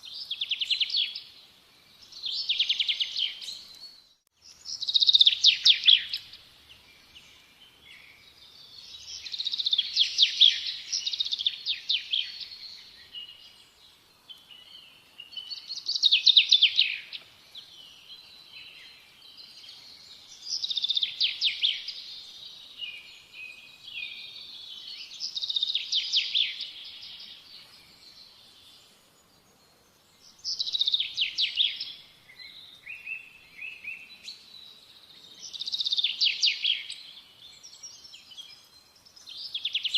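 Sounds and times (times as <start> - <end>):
songbird trilling: 4.6 - 6.4.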